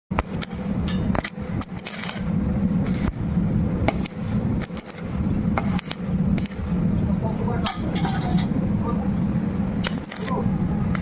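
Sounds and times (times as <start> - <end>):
welding crackles: 0.1 - 8.4, 9.7 - 11.0
low welding machine rumble: 0.1 - 11.0
welding hissing bursts: 1.1 - 3.2, 3.8 - 6.7, 9.8 - 11.0.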